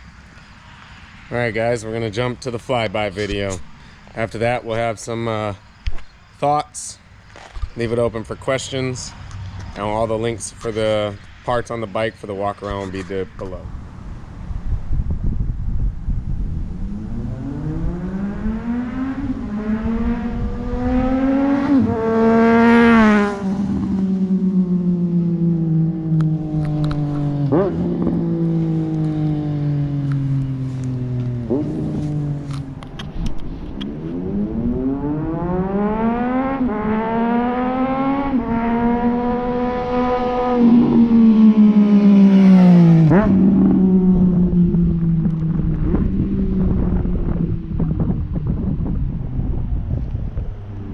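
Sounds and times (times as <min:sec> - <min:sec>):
loud motorcycle exhaust accelerating: 0:13.8 - 0:50.9.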